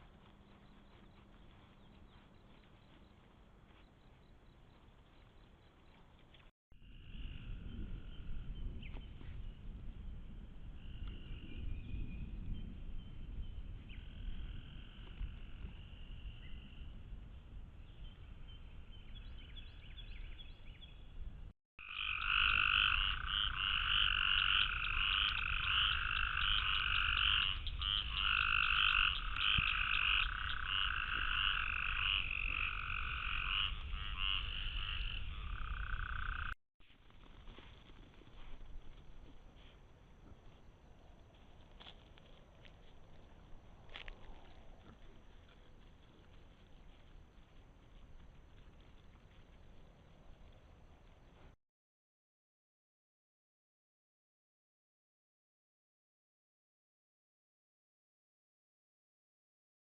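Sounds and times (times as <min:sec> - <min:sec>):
frogs calling in trills: 0:21.8 - 0:36.6.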